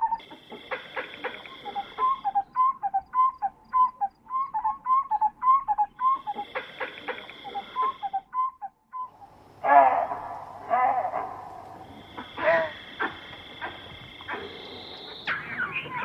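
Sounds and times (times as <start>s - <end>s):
bird whistled call: 1.4s - 9.3s.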